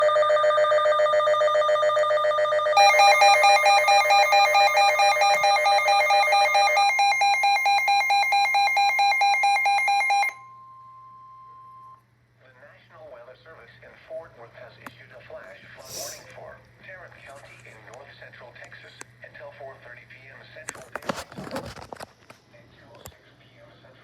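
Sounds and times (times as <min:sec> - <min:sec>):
rapid pulsing alert beeps: 0:02.8 - 0:10.3
faint steady tone: 0:10.2 - 0:12.0.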